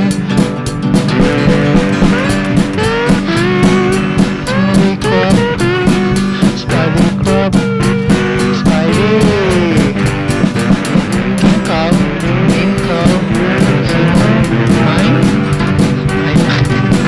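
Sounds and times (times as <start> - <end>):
instrumental indie pop with guitar: 0.0 - 17.0.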